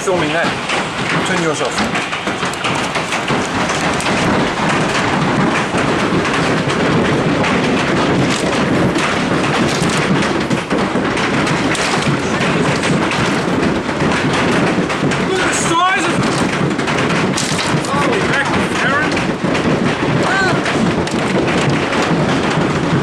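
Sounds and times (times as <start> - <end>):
large hailstones pelting down: 0.0 - 23.0.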